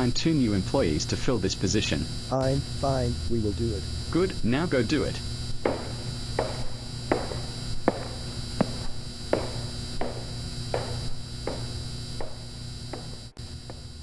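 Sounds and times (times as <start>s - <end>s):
steady low hum: 0.0s - 14.0s
footsteps with short echo: 5.7s - 13.9s.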